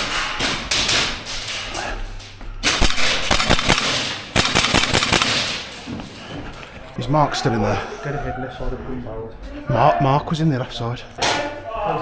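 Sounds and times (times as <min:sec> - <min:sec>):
airsoft guns firing: 0:02.6 - 0:06.9.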